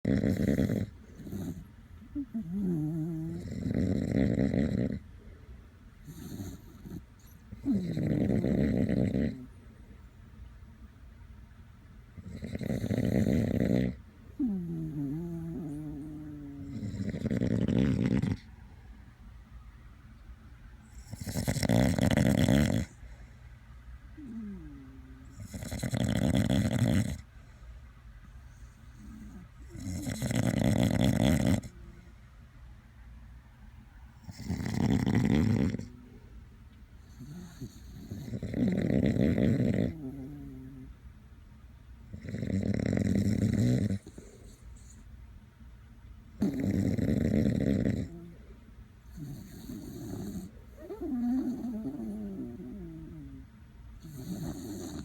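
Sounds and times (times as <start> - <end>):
dog snorting: 0.0 - 5.0, 6.0 - 9.5, 12.2 - 18.5, 21.0 - 23.0, 24.2 - 27.2, 28.9 - 31.8, 34.2 - 36.1, 37.0 - 40.9, 42.1 - 45.0, 46.4 - 48.4, 49.1 - 53.4, 54.0 - 55.0
dog snoring: 0.0 - 5.1, 6.0 - 9.6, 12.2 - 18.5, 20.9 - 23.2, 24.2 - 27.3, 28.5 - 31.8, 34.2 - 36.3, 37.0 - 40.9, 42.1 - 45.0, 46.4 - 48.5, 49.1 - 55.0.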